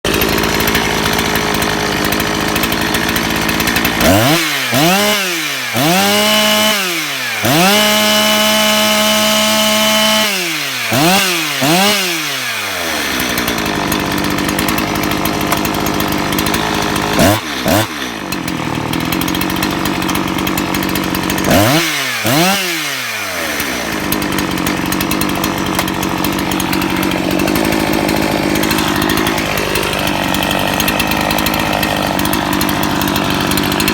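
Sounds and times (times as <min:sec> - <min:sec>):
chainsaw idling and revving: 0:00.0 - 0:33.9.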